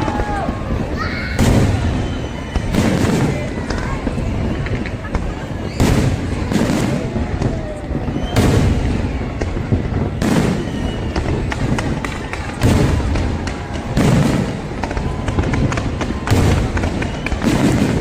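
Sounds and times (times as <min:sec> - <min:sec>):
firework booms: 0:00.0 - 0:18.0
firework crackling pops: 0:00.0 - 0:18.0.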